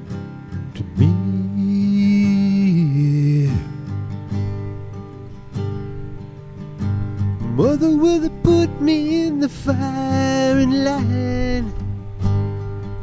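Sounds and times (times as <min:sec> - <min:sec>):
strummed acoustic guitar: 0:00.0 - 0:13.0
person singing: 0:00.7 - 0:03.9, 0:07.4 - 0:11.9.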